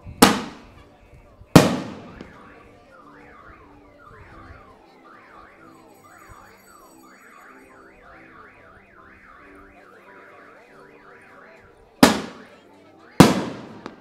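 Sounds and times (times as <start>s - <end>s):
car alarm whooping: 1.6s - 14.0s.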